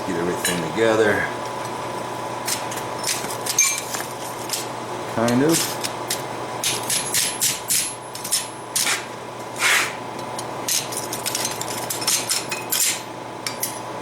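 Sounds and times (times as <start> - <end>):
metal tools clinking: 3.0 - 4.6, 10.7 - 13.9.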